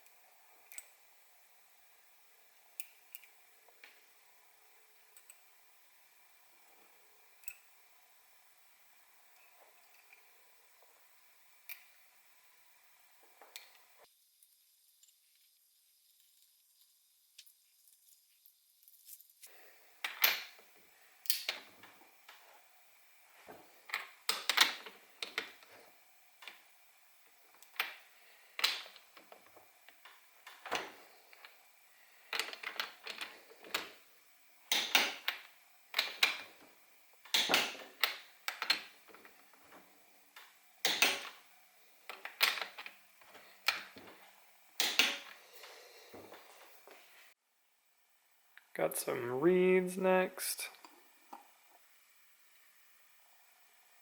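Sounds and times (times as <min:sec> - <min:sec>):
tools and metal parts clicking: 0:00.6 - 0:01.0, 0:02.8 - 0:03.4, 0:23.9 - 0:25.8, 0:28.6 - 0:31.6, 0:32.3 - 0:34.0, 0:34.7 - 0:36.6, 0:37.3 - 0:39.4, 0:40.8 - 0:41.4, 0:42.1 - 0:44.1, 0:44.8 - 0:45.4.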